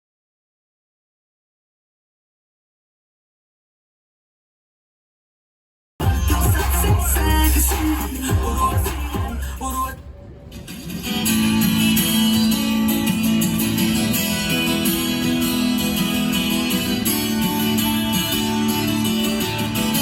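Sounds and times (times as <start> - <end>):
instrumental music with strummed guitar: 6.0 - 9.7, 10.5 - 20.0.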